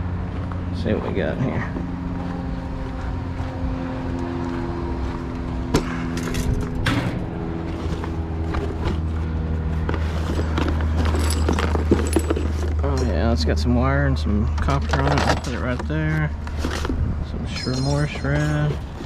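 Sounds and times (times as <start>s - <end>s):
low mechanical hum: 0.0s - 19.0s
rustling through scrap boxes: 7.6s - 13.0s, 14.8s - 19.0s.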